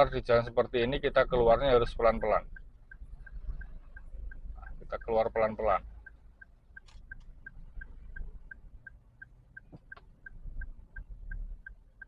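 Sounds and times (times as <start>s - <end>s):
car engine idling: 0.0s - 12.0s
car turn signal ticking: 0.0s - 12.0s.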